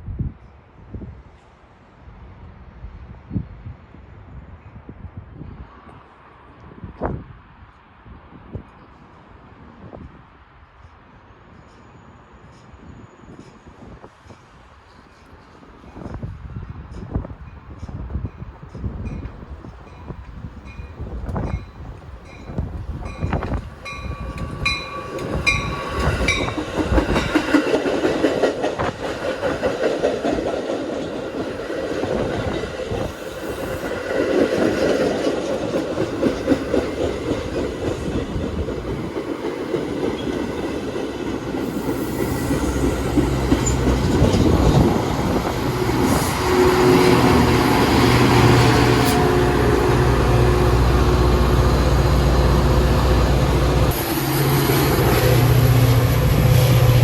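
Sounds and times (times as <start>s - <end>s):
train wheels clattering: 12.5s - 51.5s.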